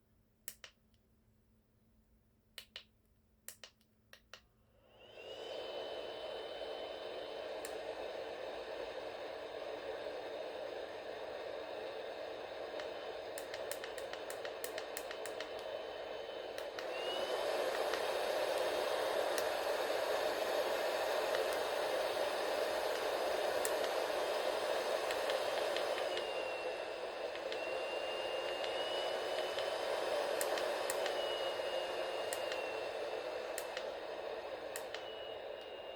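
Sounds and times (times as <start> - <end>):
clicks: 0.5 - 1.0, 2.6 - 4.5, 12.7 - 19.6, 21.2 - 21.8, 22.8 - 24.2, 24.8 - 35.9
hot air gun blowing with whine: 4.9 - 35.9.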